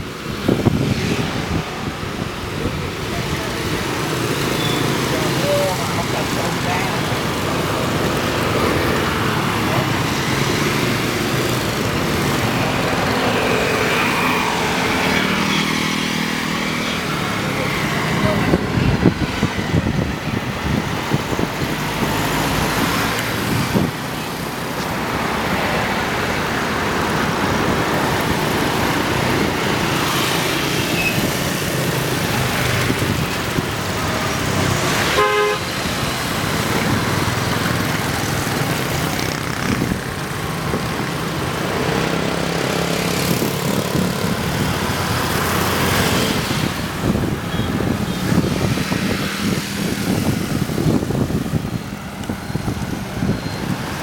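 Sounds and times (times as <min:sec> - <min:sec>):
road traffic: 0:00.0 - 0:54.0
vehicle horn beeping: 0:35.1 - 0:35.7.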